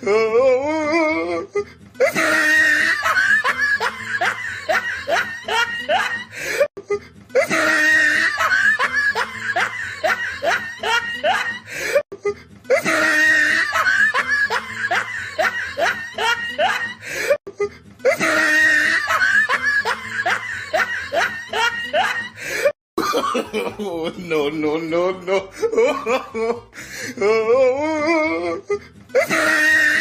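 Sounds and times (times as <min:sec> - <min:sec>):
evil laugh: 0:01.6 - 0:24.2, 0:25.3 - 0:30.0.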